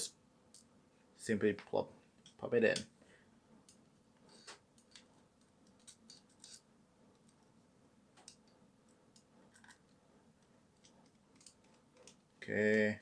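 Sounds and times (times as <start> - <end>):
small parts clicking and scraping: 3.7 - 7.5, 8.2 - 12.8.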